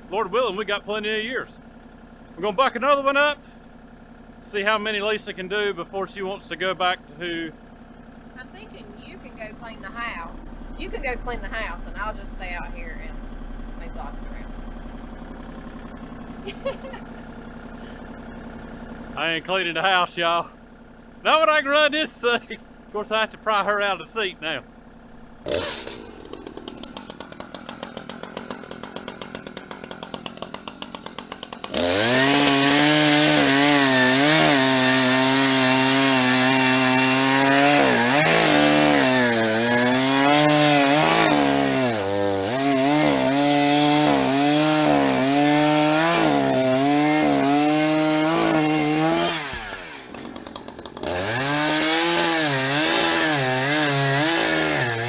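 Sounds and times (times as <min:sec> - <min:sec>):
chainsaw cutting log: 0:08.1 - 0:19.1, 0:25.3 - 0:55.0.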